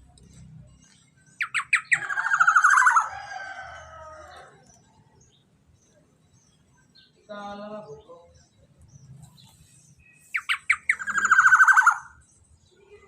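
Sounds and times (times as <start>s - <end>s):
harsh rapid rattling bird call: 1.4s - 4.3s, 10.3s - 12.3s.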